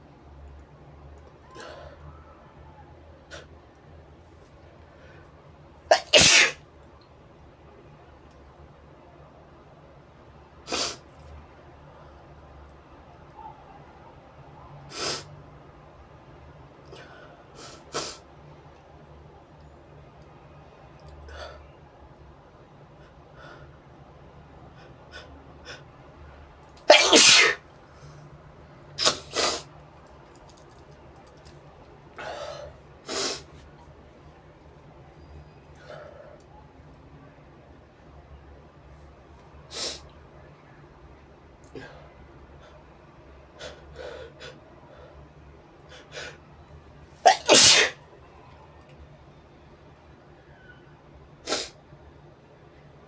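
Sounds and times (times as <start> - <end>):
person sneezing: 5.9 - 6.6, 26.9 - 27.6, 29.0 - 29.6, 47.3 - 48.0
catching breaths: 32.2 - 33.5.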